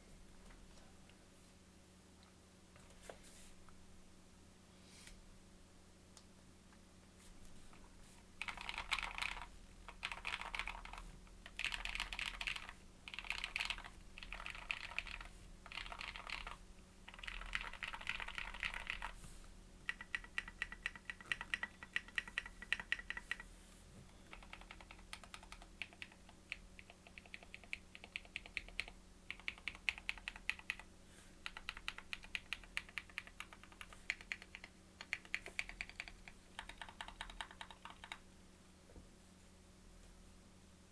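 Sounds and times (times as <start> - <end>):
mechanical keyboard typing: 8.4 - 19.2, 19.8 - 23.4, 24.3 - 38.2.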